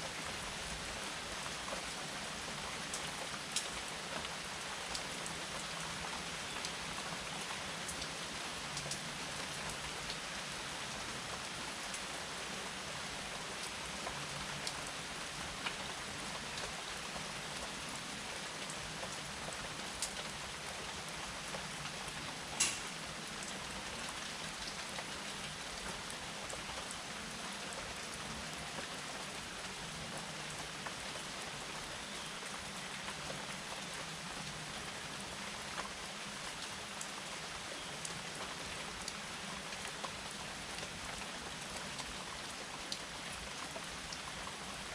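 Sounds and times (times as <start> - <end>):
steady rain hiss: 0.0 - 44.9
raindrops ticking: 21.6 - 23.6.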